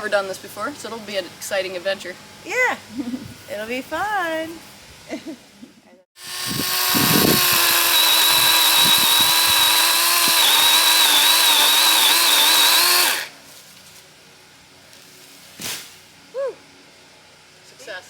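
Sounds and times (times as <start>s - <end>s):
knocks of saw cut: 6.2s - 13.3s
chainsaw cutting: 6.2s - 13.4s.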